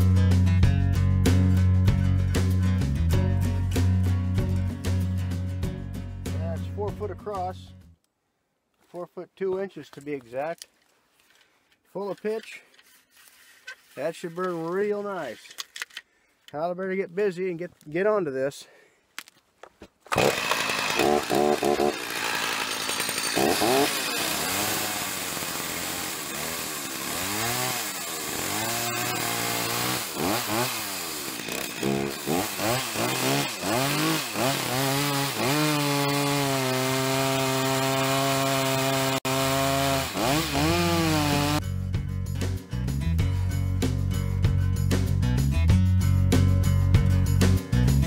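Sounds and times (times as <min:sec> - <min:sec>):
chainsaw engine revving: 0:20.1 - 0:41.6.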